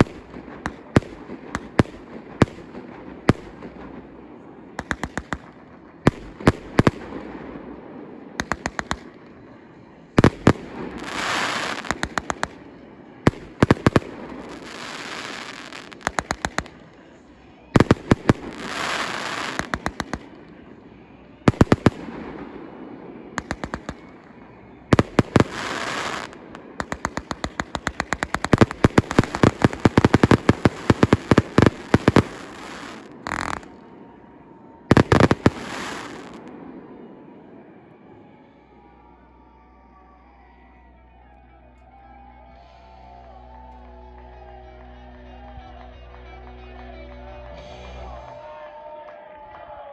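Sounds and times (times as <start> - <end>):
fireworks hissing and crackling: 0.0 - 4.0, 4.8 - 7.4, 8.4 - 9.2, 10.2 - 20.8, 21.4 - 33.9, 34.9 - 36.5
fireworks bangs: 0.0 - 38.5.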